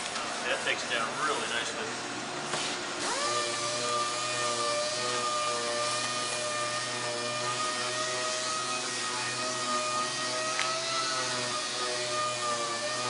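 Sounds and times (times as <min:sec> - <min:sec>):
orbital sander whining: 0:03.0 - 0:13.0.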